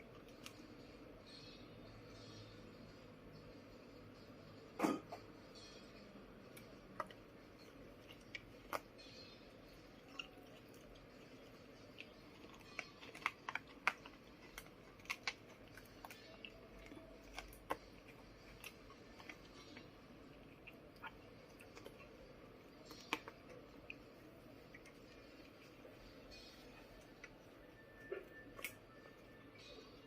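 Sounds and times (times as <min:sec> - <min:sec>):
pet crunching lettuce: 0:06.6 - 0:29.2.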